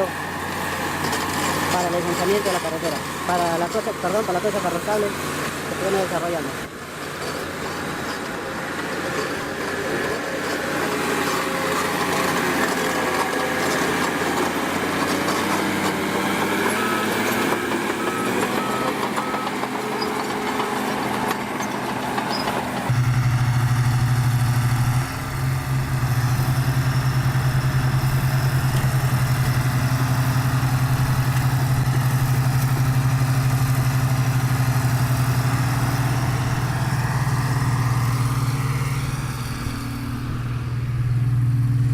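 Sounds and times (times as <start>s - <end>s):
heavy machinery diesel engine: 0.0s - 41.9s
low engine drone: 22.3s - 41.9s.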